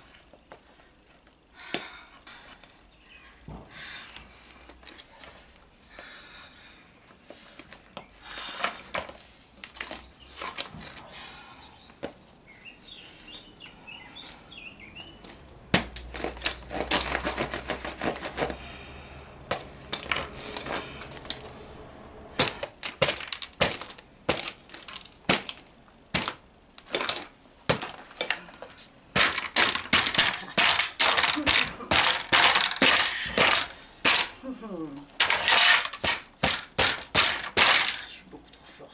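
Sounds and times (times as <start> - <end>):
plastic cracking under blows: 22.4 - 38.2.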